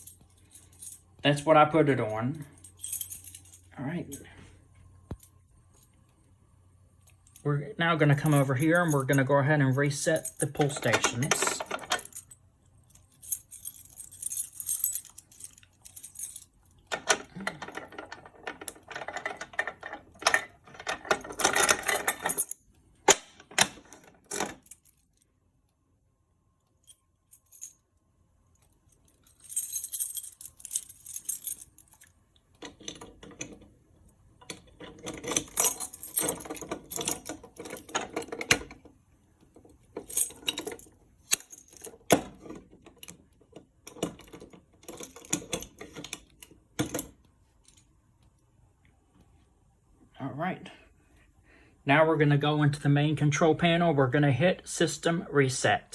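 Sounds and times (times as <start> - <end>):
keys jangling: 0.0 - 1.1, 2.4 - 4.4, 10.1 - 22.6, 28.5 - 33.7, 34.4 - 38.8, 39.6 - 47.9.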